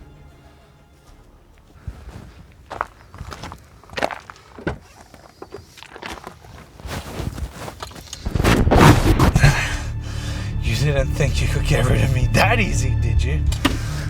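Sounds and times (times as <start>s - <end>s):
footsteps walking: 0.1s - 9.7s.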